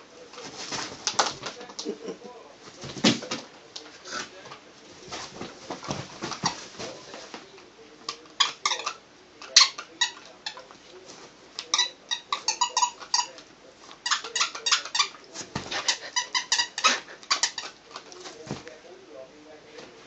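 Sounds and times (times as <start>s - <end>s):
squeaky dog toy squeaking: 8.4s - 9.0s, 9.6s - 10.6s, 11.7s - 13.4s, 14.0s - 15.2s, 15.8s - 17.8s.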